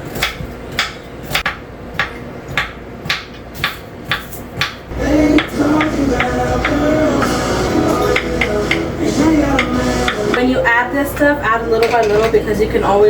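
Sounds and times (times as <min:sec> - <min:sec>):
knife chopping on cutting board: 0:00.1 - 0:04.8
background music: 0:04.9 - 0:11.9.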